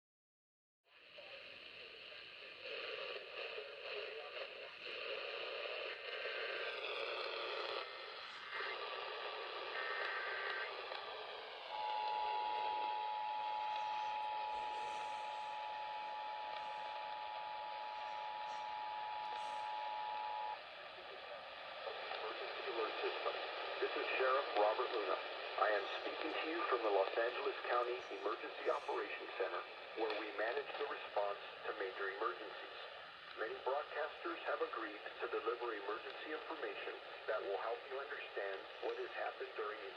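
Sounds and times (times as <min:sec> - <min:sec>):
radio static hiss: 0:01.0 - 0:39.9
data tone bursts: 0:09.7 - 0:10.8, 0:11.7 - 0:20.6.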